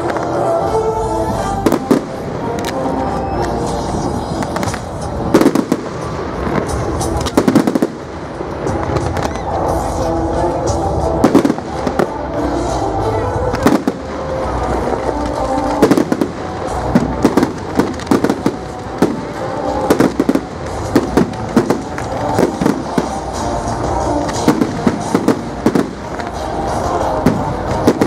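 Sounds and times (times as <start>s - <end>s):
fireworks bangs and crackles: 0.0s - 28.0s
music playing: 0.0s - 28.0s.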